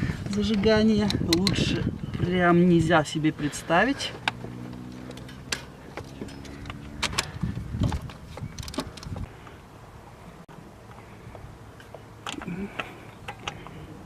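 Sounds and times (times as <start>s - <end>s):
metallic clicks of hand tools: 0.3s - 1.6s.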